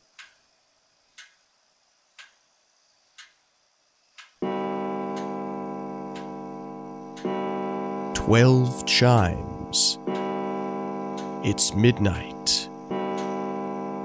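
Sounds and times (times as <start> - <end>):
deep clock chime: 4.4 - 14.0
clock ticking: 8.2 - 10.3.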